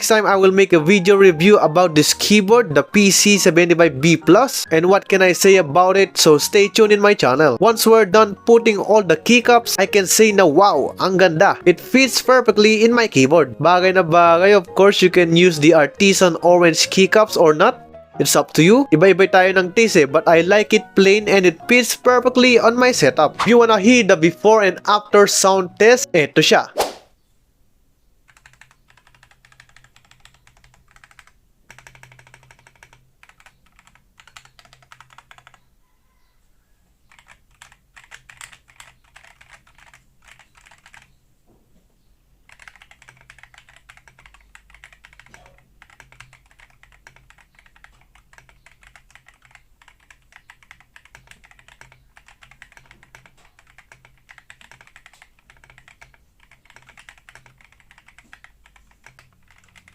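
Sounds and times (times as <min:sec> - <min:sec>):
mechanical keyboard typing: 0:28.3 - 0:35.6, 0:37.1 - 0:41.1, 0:42.5 - 0:59.9.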